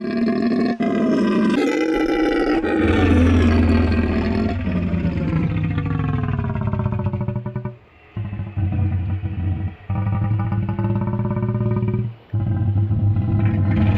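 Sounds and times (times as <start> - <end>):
monster roar: 0.0 - 13.9
deep low rumble: 1.8 - 13.9.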